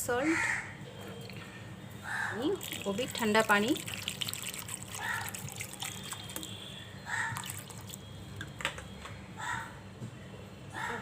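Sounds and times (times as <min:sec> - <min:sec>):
water pouring into a jar: 0:02.4 - 0:08.1.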